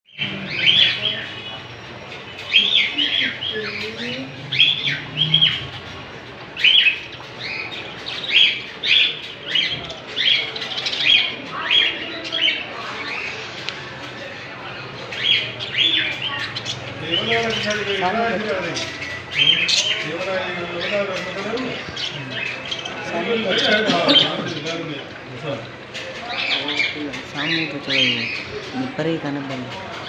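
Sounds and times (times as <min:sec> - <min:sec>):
parrots squawking: 0:00.1 - 0:29.0.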